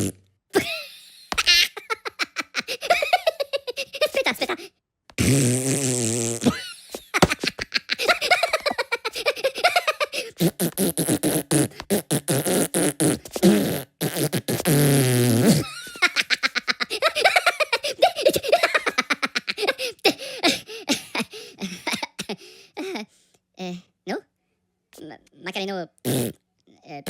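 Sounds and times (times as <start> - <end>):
cartoon voices blowing raspberries: 0.0 - 0.2, 4.5 - 6.6, 8.0 - 15.8
high pitched giggling: 0.6 - 4.7, 6.4 - 10.6, 15.5 - 22.2.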